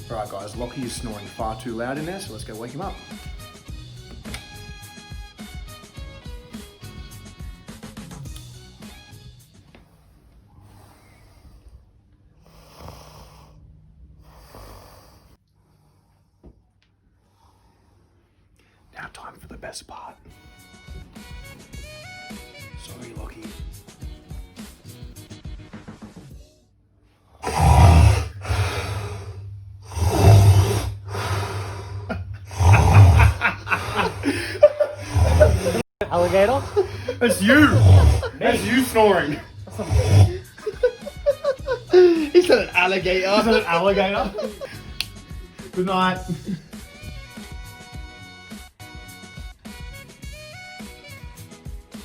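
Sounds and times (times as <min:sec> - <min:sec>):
man snoring: 0:00.0 - 0:07.5, 0:09.8 - 0:16.4, 0:27.3 - 0:48.5.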